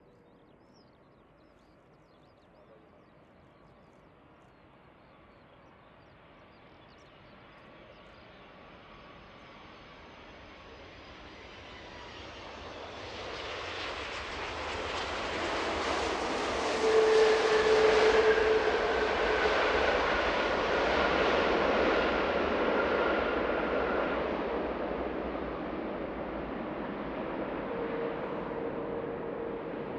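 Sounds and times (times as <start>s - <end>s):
jet engines whining and rushing: 8.4s - 29.9s.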